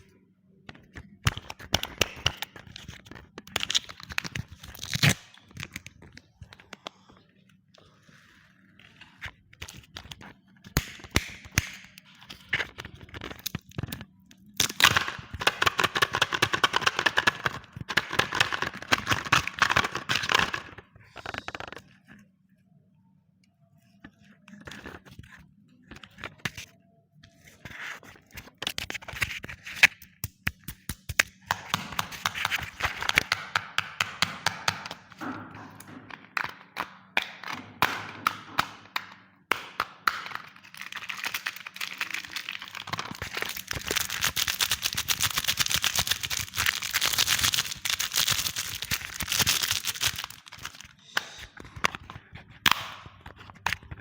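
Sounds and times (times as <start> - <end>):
plastic packaging crinkling and tearing: 1.9 - 6.4, 40.5 - 51.0.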